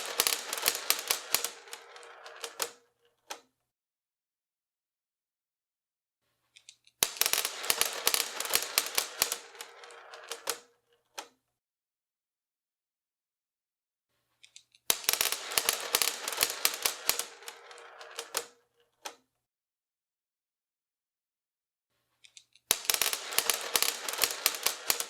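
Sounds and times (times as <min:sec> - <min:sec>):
sharp mechanical clicks and rattles: 0:00.0 - 0:03.4, 0:07.0 - 0:10.6, 0:14.9 - 0:19.2, 0:22.7 - 0:25.0.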